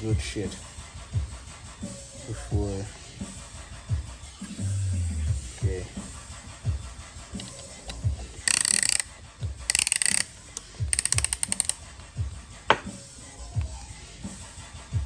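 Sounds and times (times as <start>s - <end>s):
background music with steady beat: 0.0s - 15.0s
ratchet clicking: 8.5s - 9.1s, 9.7s - 10.3s, 11.0s - 11.8s.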